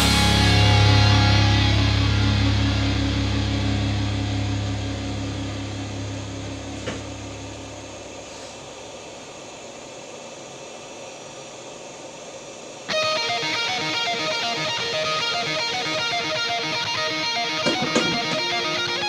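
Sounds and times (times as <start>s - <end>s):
electric guitar rock music: 0.0s - 7.7s, 12.9s - 19.0s
steady low hiss: 0.0s - 19.0s.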